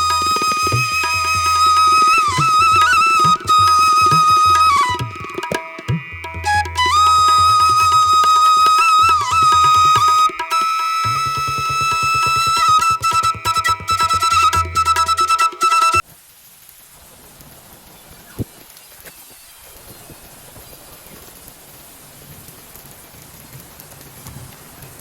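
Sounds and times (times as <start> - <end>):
melody over drum beat: 0.0 - 8.0
faint steady hiss: 16.0 - 25.0.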